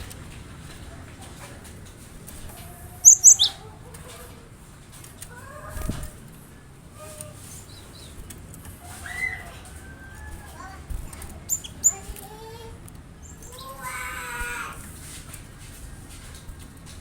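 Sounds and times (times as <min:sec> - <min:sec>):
faint bird chirps: 0:02.9 - 0:03.6, 0:11.4 - 0:12.1
bird calling sharp high notes: 0:03.0 - 0:03.6.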